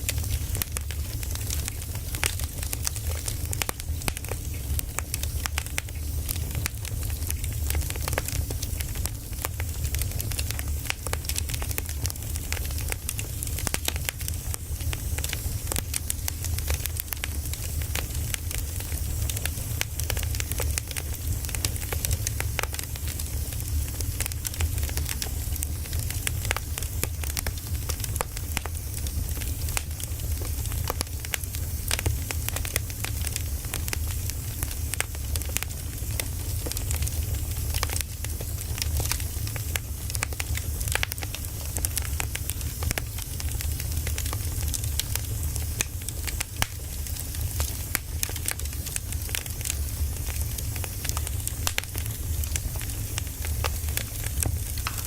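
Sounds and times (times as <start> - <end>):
fire low rumble and hiss: 0.0 - 55.0
firewood crackling and popping: 0.0 - 55.0.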